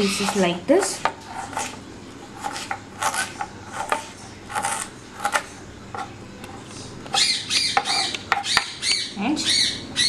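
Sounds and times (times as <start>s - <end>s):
knife slicing ginger: 0.0s - 1.8s, 2.4s - 6.1s.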